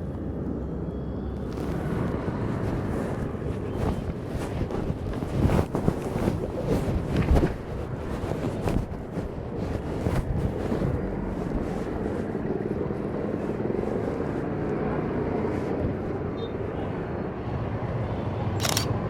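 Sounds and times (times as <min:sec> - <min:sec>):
vehicle engine humming: 0:00.0 - 0:17.4
sharp click: 0:18.6 - 0:19.0.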